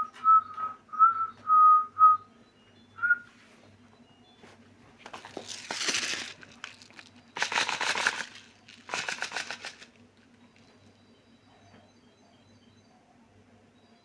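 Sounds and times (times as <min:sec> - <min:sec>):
birds fluttering in cage: 0:05.0 - 0:10.0.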